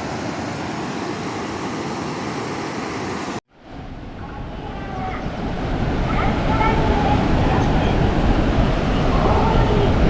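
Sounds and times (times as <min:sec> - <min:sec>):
rushing water: 0:00.0 - 0:10.0
deep water rumble: 0:03.6 - 0:10.0.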